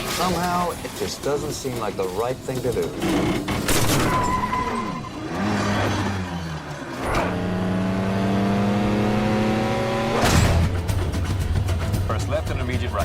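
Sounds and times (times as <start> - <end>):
car engine revving and accelerating: 5.0 - 11.1
sharp bang: 10.2 - 11.4.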